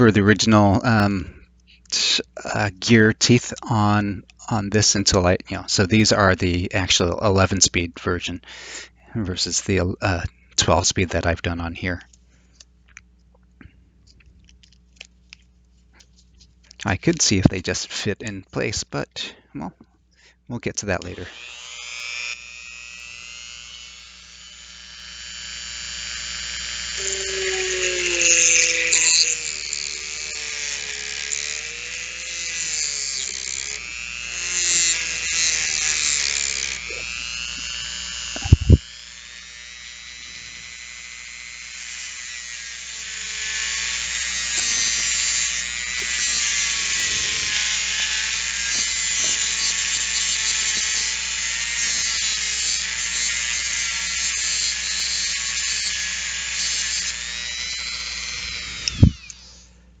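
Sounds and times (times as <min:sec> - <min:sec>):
rotary tool grinding metal: 0:21.0 - 0:59.7.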